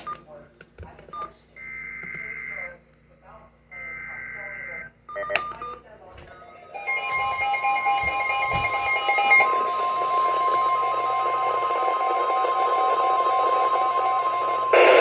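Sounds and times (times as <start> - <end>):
steady alarm tone from radio: 3.8 - 5.3, 6.7 - 15.0.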